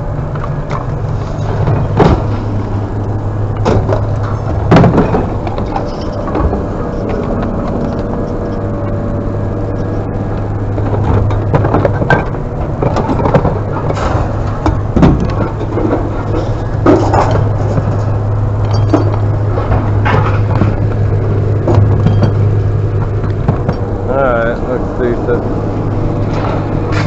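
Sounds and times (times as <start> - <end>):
vehicle engine idling: 0.0 - 27.0
scrap metal clanking: 3.6 - 8.6.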